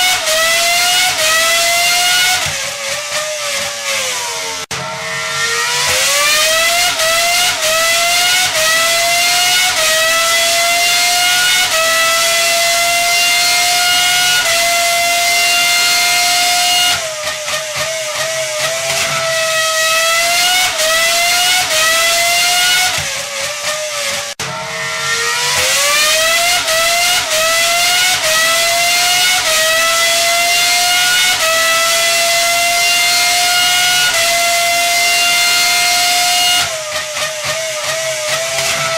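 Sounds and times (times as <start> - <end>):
high-revving engine accelerating: 0.0 - 38.9.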